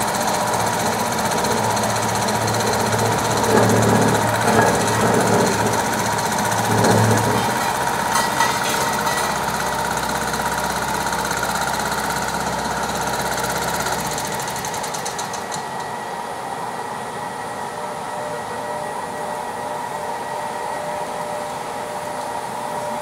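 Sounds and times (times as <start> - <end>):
machinery engine rumbling: 0.0 - 14.4
hissing machine noise: 0.0 - 23.0.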